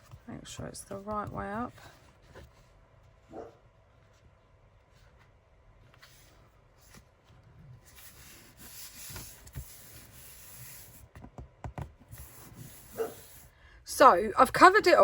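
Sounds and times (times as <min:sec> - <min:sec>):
hand rubbing paper: 0:04.0 - 0:11.2, 0:12.0 - 0:13.5.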